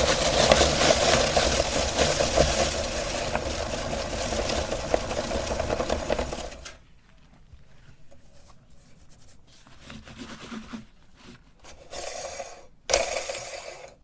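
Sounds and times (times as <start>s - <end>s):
electric meat grinder motor hum: 0.0s - 6.6s.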